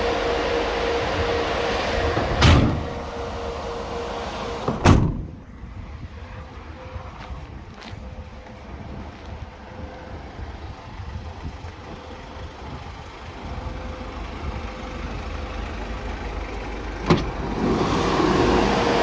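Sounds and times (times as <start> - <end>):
fan blowing with steady hum: 0.0 - 6.4
diesel engine idling: 0.0 - 19.0.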